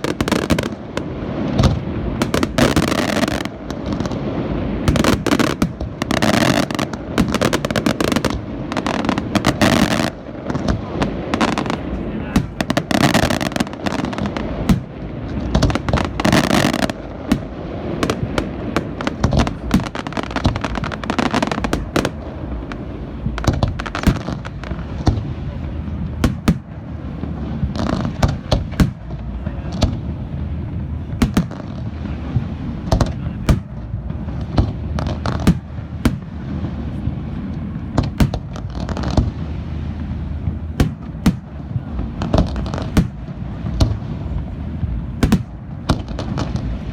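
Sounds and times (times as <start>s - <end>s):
firework bangs: 0.0s - 46.9s
low rumble: 16.9s - 46.9s.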